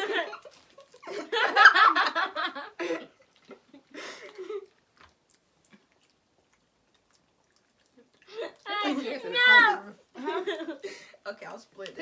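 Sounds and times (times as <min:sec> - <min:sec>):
person chewing hard candy: 0:04.3 - 0:08.7.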